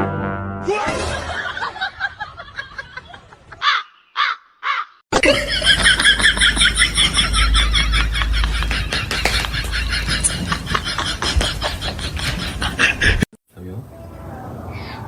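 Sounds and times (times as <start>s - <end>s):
bird cawing: 3.6s - 5.0s.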